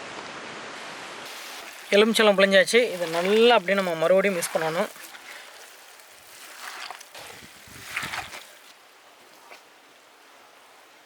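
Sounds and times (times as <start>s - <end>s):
wet mixing noise: 1.3s - 8.8s.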